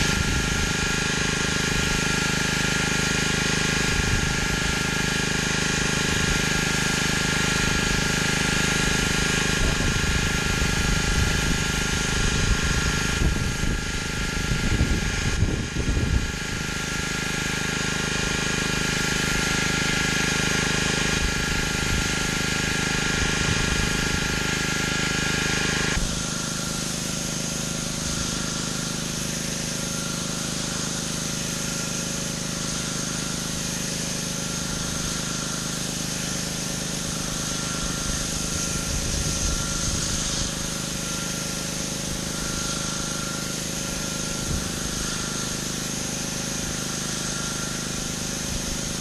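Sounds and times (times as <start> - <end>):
hissing water spray: 0.0 - 49.0
pressure washer engine running: 0.0 - 49.0.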